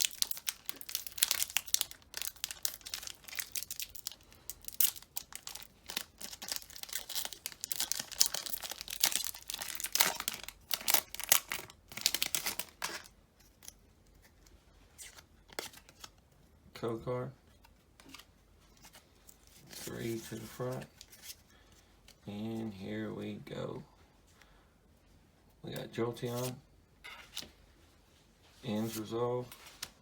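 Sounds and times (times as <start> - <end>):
foil wrapper crinkling and tearing: 0.0 - 13.8.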